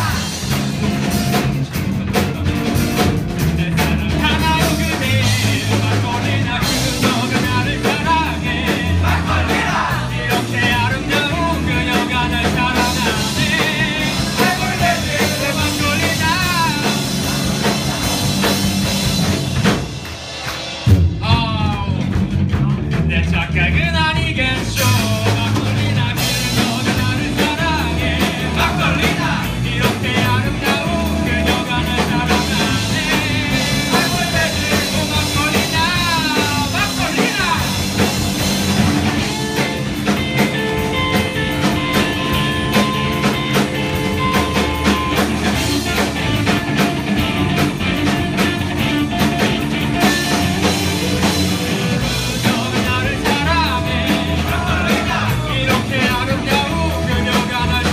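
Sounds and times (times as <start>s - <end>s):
live rock band playing: 0.0s - 57.9s
person singing: 2.0s - 18.4s, 23.1s - 37.8s, 49.5s - 57.9s.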